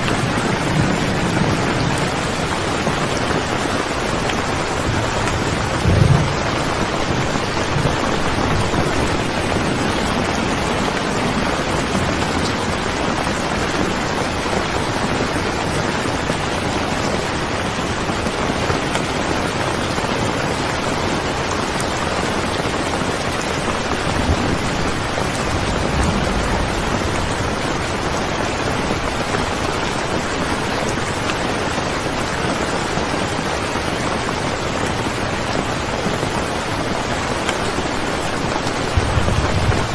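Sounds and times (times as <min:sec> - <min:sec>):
steady rain: 0:00.0 - 0:39.9
faint low thumps: 0:05.2 - 0:06.8.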